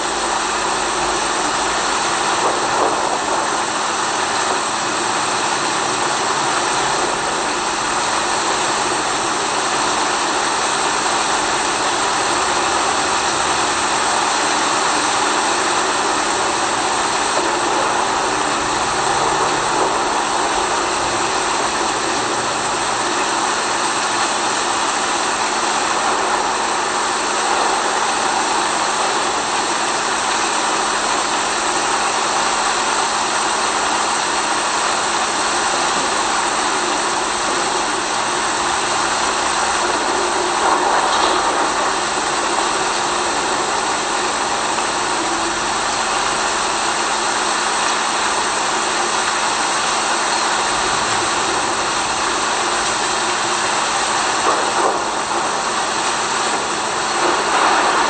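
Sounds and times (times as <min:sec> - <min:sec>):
rain hissing: 0:00.0 - 0:58.0.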